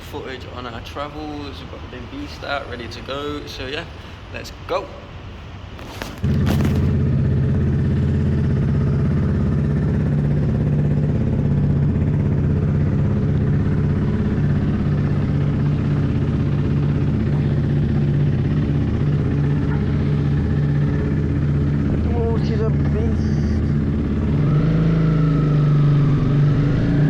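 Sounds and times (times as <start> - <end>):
motorcycle engine idling: 6.2 - 27.0.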